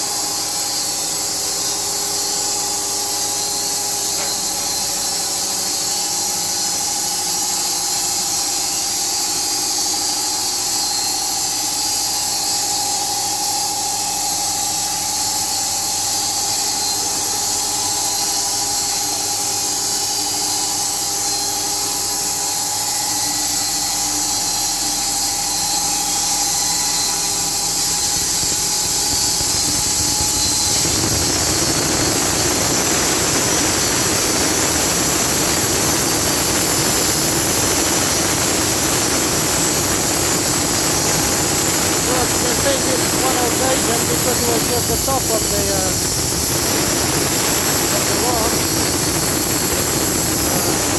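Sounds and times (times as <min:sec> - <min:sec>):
sawmill high whine: 0:00.0 - 0:08.4, 0:20.6 - 0:50.9
rough machine noise: 0:27.2 - 0:50.9.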